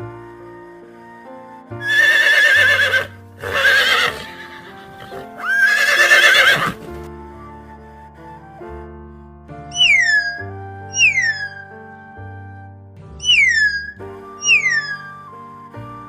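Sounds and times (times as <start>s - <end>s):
background music: 0.0s - 16.0s
horse whinnying: 1.8s - 7.0s.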